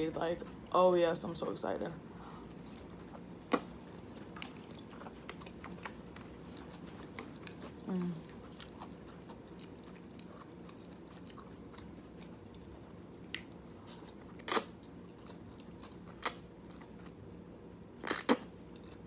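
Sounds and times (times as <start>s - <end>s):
chewing noodles: 2.2s - 17.2s
wet mouth smacks: 3.5s - 3.7s, 14.5s - 14.8s.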